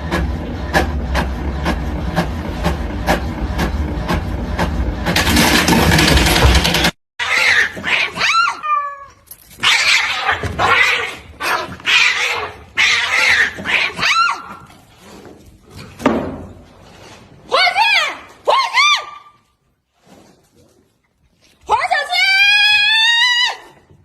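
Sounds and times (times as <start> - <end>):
cat yowling: 7.2 - 14.7.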